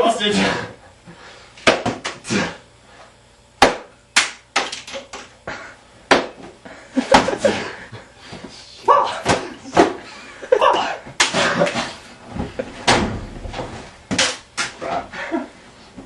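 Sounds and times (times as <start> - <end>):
floppy disks hitting walls: 1.6 - 2.6, 3.6 - 5.3, 6.1 - 7.6, 8.4 - 10.1, 10.7 - 15.1.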